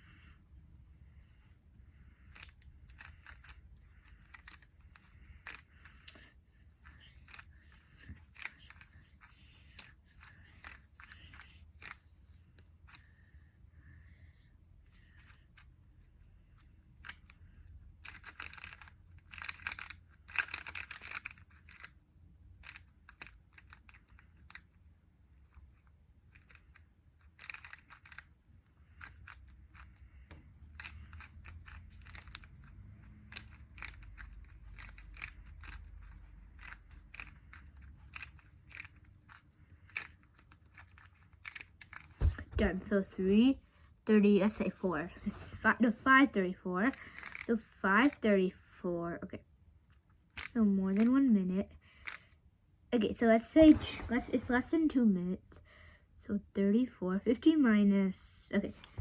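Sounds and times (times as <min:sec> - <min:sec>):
plastic puzzle clicking: 0:02.3 - 0:12.0, 0:17.0 - 0:22.0, 0:22.6 - 0:24.8, 0:26.3 - 0:28.3, 0:30.7 - 0:42.3, 0:46.8 - 0:48.2, 0:50.3 - 0:51.2.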